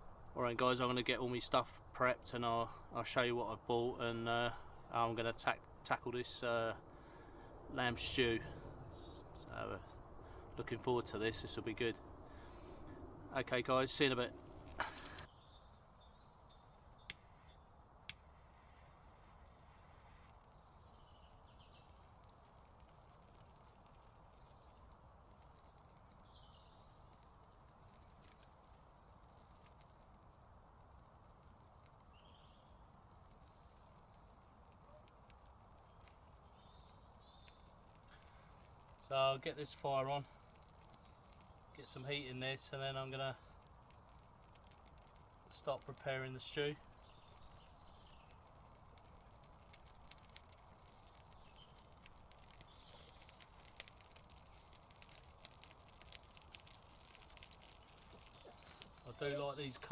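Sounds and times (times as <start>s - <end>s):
campfire crackling: 0.0s - 59.9s
low steady hiss: 0.0s - 59.9s
faint ticks: 16.5s - 59.9s.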